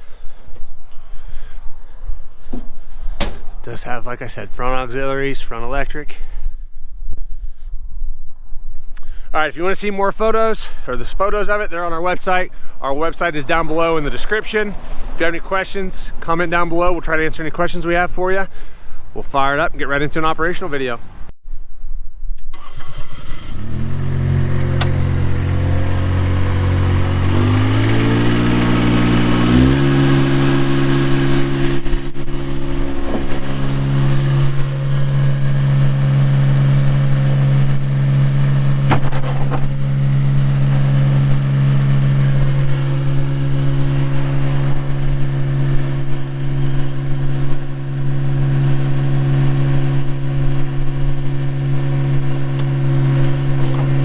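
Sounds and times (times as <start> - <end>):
diesel engine starting and revving: 22.5 - 54.0.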